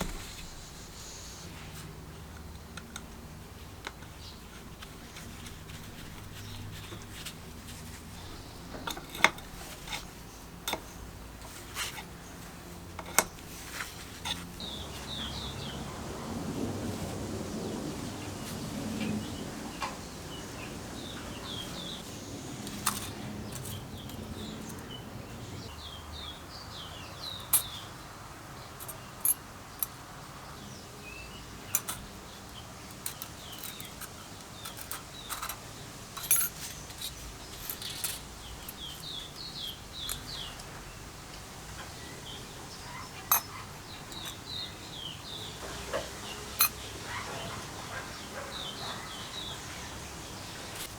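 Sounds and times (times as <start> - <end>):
small bird chirping: 14.2 - 16.5, 17.6 - 28.0, 36.5 - 50.9.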